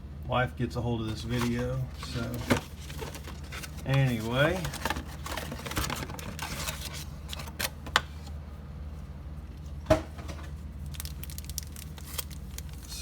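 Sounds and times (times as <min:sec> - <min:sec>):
low steady hum: 0:00.0 - 0:13.0
cardboard box and foil packs rustling: 0:01.0 - 0:08.3, 0:10.2 - 0:13.0.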